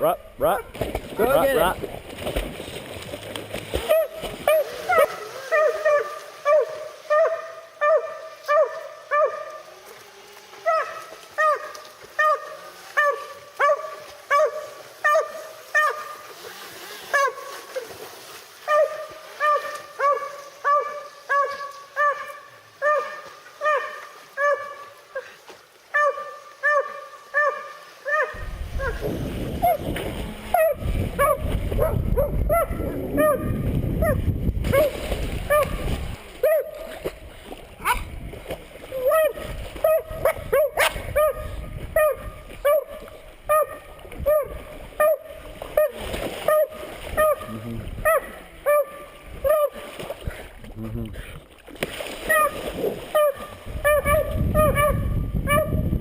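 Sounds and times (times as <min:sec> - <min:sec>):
hound barking: 0:03.8 - 0:09.6, 0:10.6 - 0:16.2, 0:18.6 - 0:25.0, 0:25.9 - 0:29.0, 0:30.5 - 0:34.9, 0:35.5 - 0:35.8, 0:36.4 - 0:37.0, 0:37.8 - 0:38.1, 0:39.0 - 0:49.8, 0:52.3 - 0:55.8.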